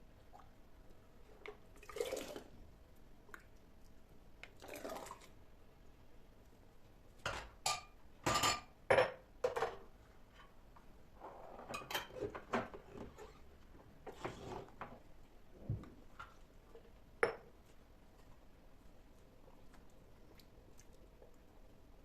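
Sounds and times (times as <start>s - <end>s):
dishes and utensils clinking: 7.3s - 9.8s.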